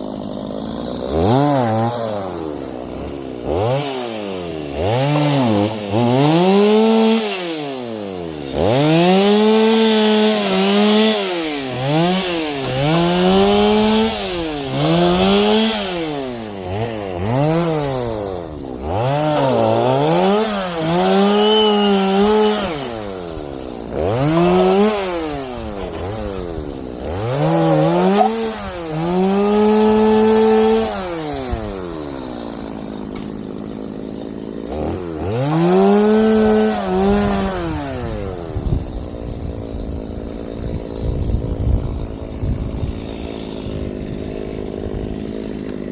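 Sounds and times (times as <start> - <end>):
chainsaw revving: 0.0 - 45.9.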